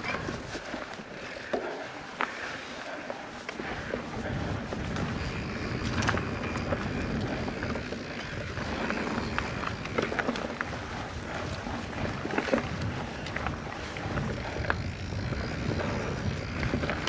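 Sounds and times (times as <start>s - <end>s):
wind rumbling on microphone: 0.0s - 2.5s, 3.2s - 17.0s
bike tyres rolling on dirt: 0.0s - 17.0s
bike clicks and knocks: 3.5s - 17.0s.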